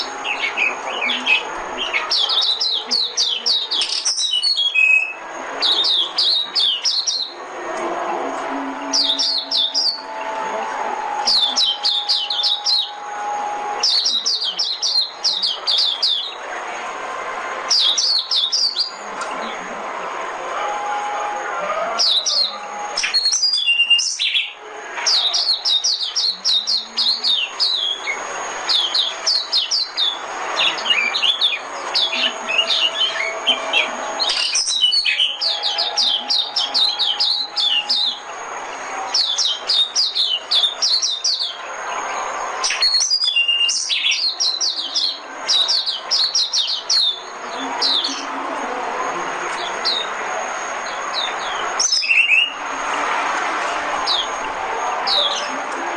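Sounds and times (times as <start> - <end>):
bird twittering song: 0.0 - 7.4, 8.9 - 10.2, 11.2 - 13.1, 13.8 - 16.4, 17.7 - 19.0, 22.0 - 48.3, 50.8 - 52.6.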